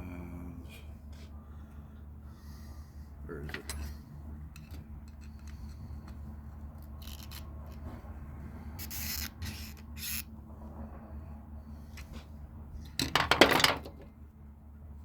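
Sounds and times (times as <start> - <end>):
steady low hum: 0.0 - 15.0
tools scraping on brass valve: 8.8 - 10.2.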